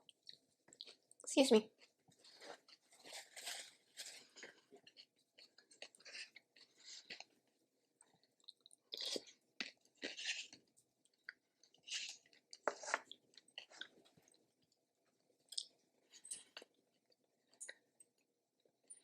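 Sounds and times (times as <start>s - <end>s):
person chewing food: 0.0s - 1.2s, 1.8s - 18.3s.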